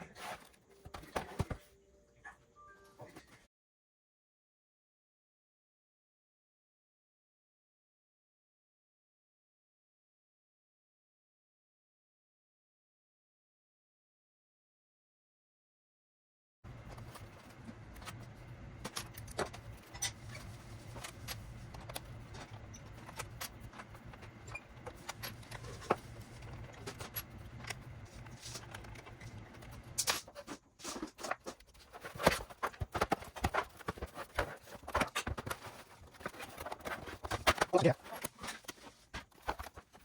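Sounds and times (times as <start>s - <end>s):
steady low hum: 16.7s - 31.1s.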